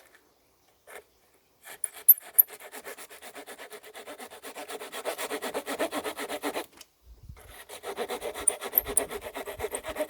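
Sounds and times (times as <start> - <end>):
small saw cutting a branch: 1.8 - 6.8, 7.4 - 10.0.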